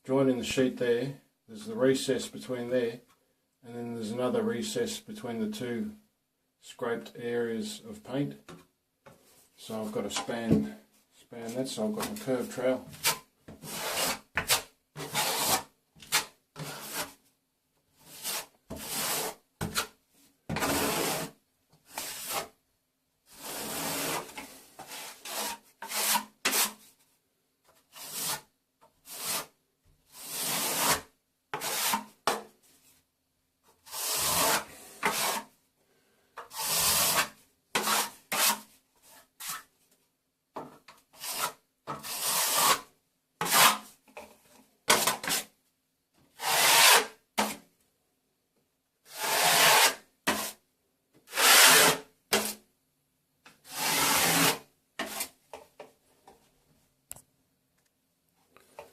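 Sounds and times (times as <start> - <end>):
plastering trowel scraping: 11.9 - 17.2, 18.0 - 19.9, 20.5 - 22.6, 23.3 - 26.8, 27.9 - 32.4, 33.8 - 35.5, 36.4 - 39.7, 41.1 - 43.9, 44.9 - 45.5, 46.3 - 47.6, 49.1 - 50.6, 51.3 - 52.6, 53.6 - 55.4.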